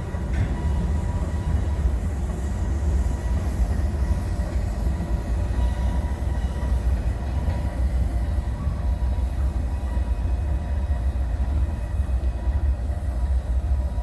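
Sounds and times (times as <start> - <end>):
freight train rumbling past: 0.0 - 14.0.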